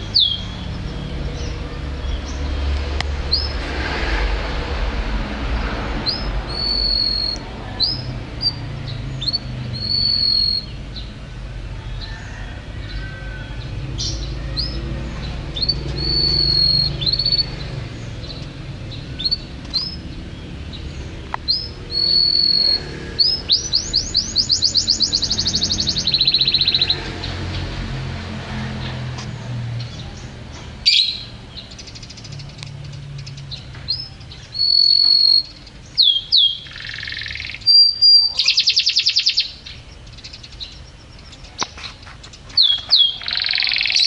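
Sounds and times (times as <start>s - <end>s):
canary singing: 0.0s - 3.6s, 6.0s - 28.1s, 29.8s - 44.0s.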